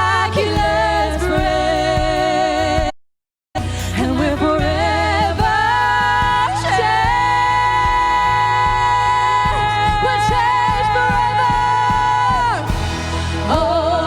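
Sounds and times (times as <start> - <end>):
worship band playing: 3.6 - 14.0.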